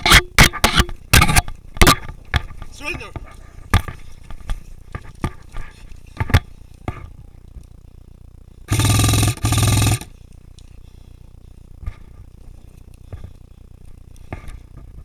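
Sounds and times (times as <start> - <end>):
airsoft rifle full-auto bursts: 8.7 - 10.2.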